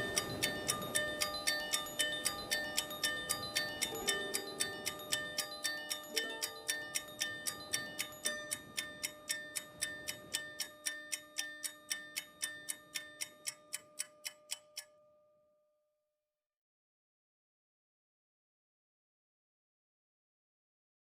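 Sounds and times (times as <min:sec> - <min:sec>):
clock-like ticking: 0:00.0 - 0:15.0
held ringing tone: 0:00.0 - 0:15.5.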